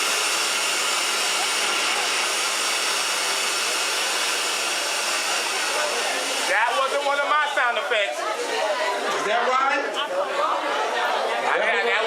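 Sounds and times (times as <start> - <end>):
loud rushing fan noise: 0.0 - 8.0
faint voices: 3.8 - 12.0.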